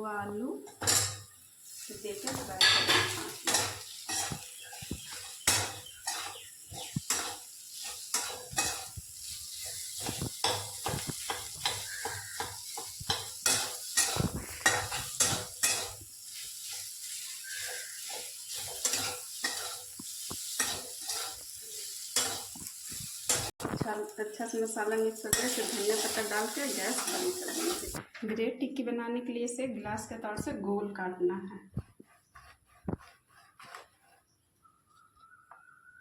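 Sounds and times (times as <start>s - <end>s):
light sizzle: 0.0s - 28.0s
spoon scraping and knocking in a pan: 0.7s - 23.8s, 25.3s - 28.0s.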